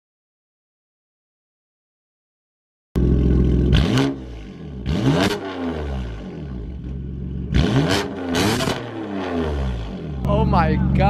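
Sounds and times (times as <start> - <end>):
car engine revving: 3.0 - 11.0
exhaust crackle: 3.0 - 11.0.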